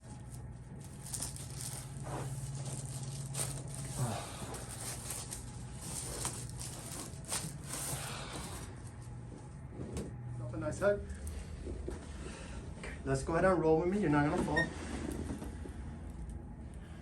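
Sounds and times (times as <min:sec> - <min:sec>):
rustling and crinkling handling: 0:00.0 - 0:12.2
steady low hum: 0:00.0 - 0:17.0.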